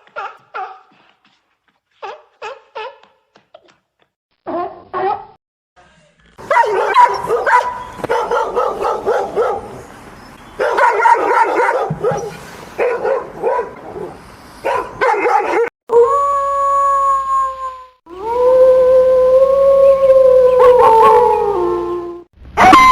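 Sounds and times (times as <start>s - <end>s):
dog barking and yipping: 0.0s - 1.0s, 2.0s - 3.2s, 4.5s - 5.3s, 6.4s - 9.8s, 10.6s - 15.7s
dog howling: 15.9s - 22.9s.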